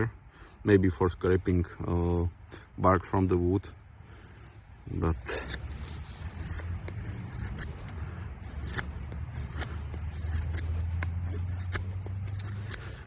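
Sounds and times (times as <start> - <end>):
steady low hum: 3.4 - 13.0
knife scraping wood: 4.3 - 13.0.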